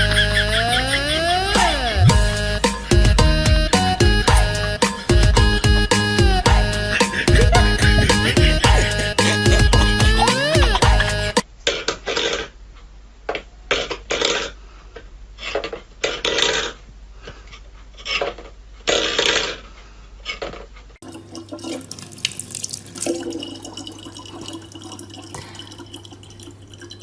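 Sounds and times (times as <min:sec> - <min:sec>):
low hum: 0:00.0 - 0:11.4
water running steadily: 0:21.0 - 0:27.0
water splashing: 0:21.0 - 0:27.0.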